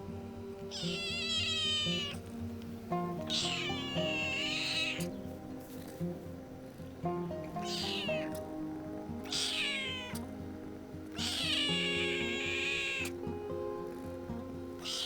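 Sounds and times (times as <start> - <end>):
background music: 0.0 - 15.0
cat meowing: 0.7 - 2.3, 3.2 - 5.1, 7.6 - 8.4, 9.2 - 10.3, 11.1 - 13.2, 14.8 - 15.0.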